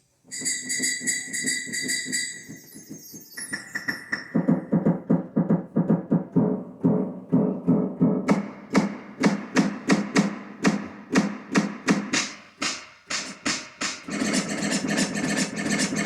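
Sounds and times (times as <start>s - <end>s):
synthesizer drum hits: 3.5s - 16.0s.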